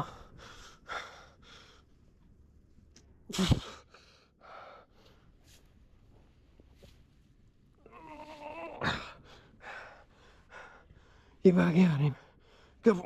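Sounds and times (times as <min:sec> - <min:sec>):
heavy straining breaths: 0:07.9 - 0:11.4.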